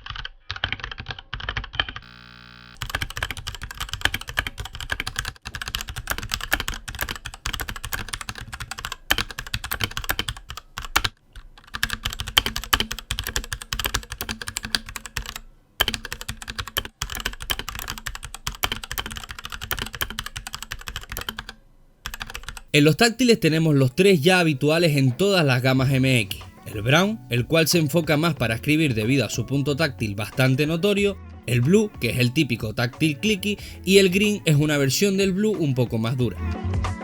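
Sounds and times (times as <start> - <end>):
mechanical keyboard typing: 0.0 - 2.2, 2.8 - 22.7.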